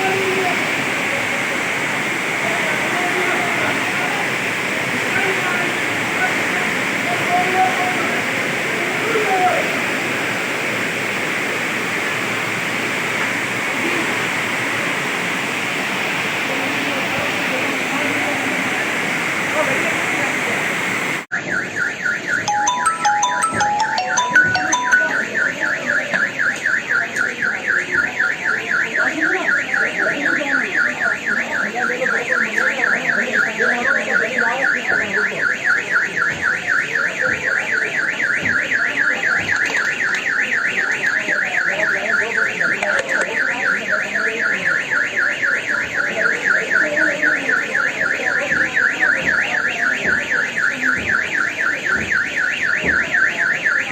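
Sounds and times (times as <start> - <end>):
electronic alarm beeping: 0.0 - 53.9
short electronic tones: 22.5 - 25.5.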